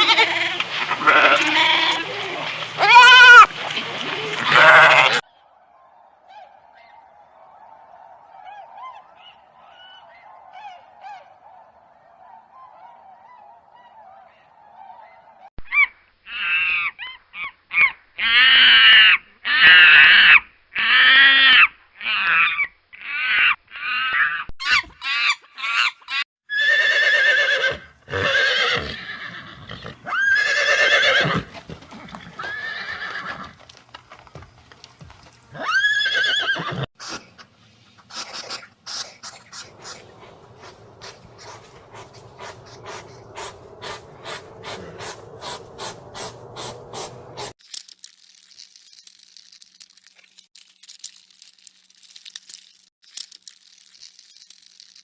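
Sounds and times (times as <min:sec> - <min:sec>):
geese honking: 0:38.3 - 0:47.5.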